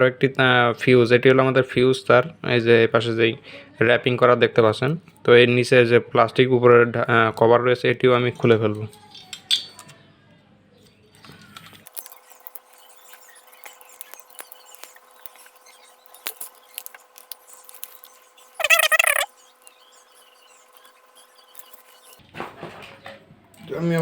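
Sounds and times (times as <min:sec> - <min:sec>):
tool scratching plastic: 0:11.9 - 0:19.3
loud warbling squeak: 0:18.6 - 0:19.3.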